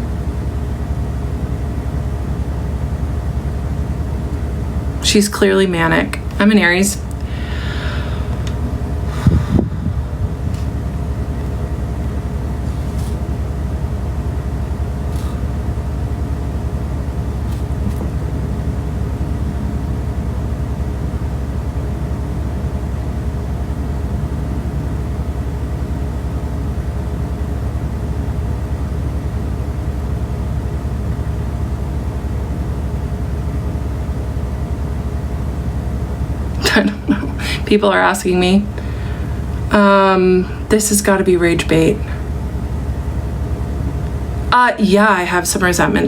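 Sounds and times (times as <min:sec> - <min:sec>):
steady low rumble: 0:00.0 - 0:28.1
faint hum: 0:00.0 - 0:46.0.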